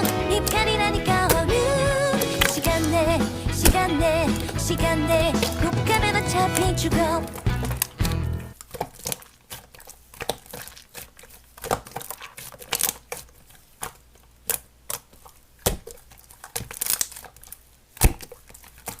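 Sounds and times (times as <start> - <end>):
slime popping: 6.4 - 19.0
slime squeezed crackling: 6.4 - 19.0.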